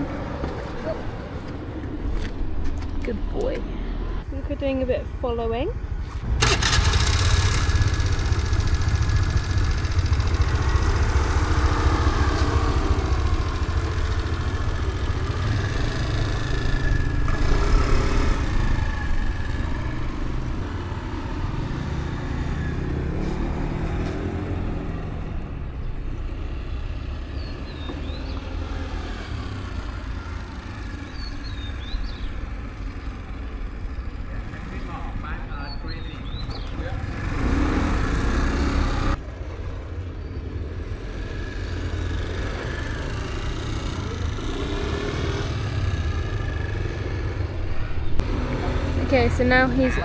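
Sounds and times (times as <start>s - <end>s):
heavy low rumble: 0.0s - 22.3s, 46.1s - 50.0s
small motorbike engine running: 4.4s - 50.0s.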